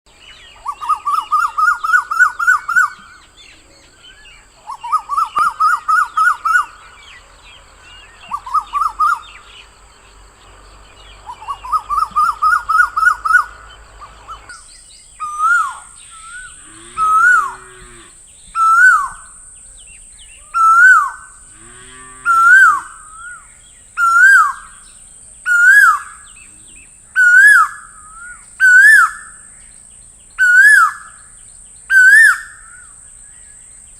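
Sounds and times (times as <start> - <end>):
koel calling: 11.2 - 18.0.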